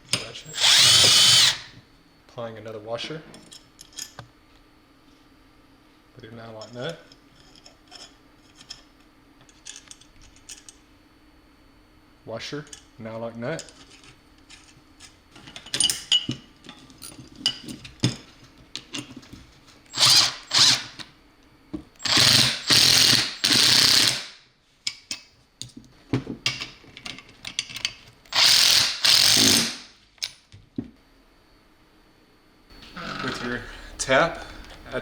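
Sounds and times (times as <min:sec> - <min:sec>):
ratchet wrench clicking: 0:28.3 - 0:29.8.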